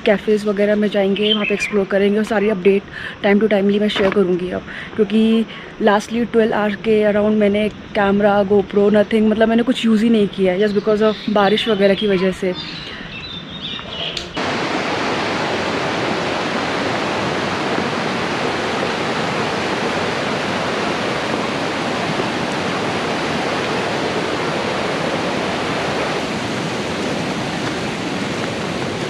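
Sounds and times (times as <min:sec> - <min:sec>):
fast-flowing water rushing: 0:14.4 - 0:29.0.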